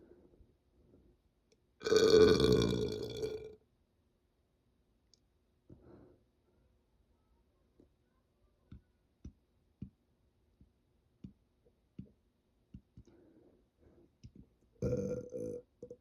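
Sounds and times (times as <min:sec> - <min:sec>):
soft breathy noise: 0:00.0 - 0:01.3, 0:05.6 - 0:07.0, 0:13.0 - 0:14.5.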